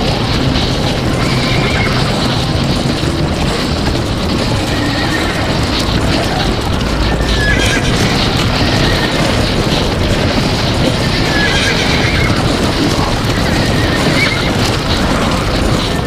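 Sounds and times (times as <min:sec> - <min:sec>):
horses galloping: 0:00.0 - 0:16.0
horse whinnies: 0:01.0 - 0:02.4, 0:04.4 - 0:15.6.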